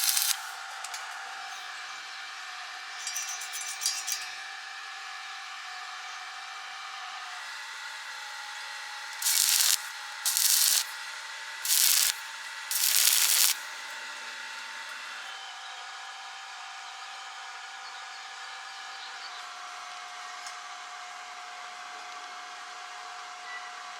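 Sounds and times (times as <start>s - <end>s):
arc welding hiss: 0.0s - 0.6s, 9.2s - 13.7s.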